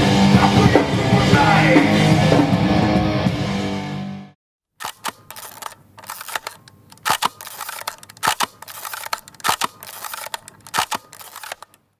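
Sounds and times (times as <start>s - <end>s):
rapid sharp clicks: 4.8s - 11.9s.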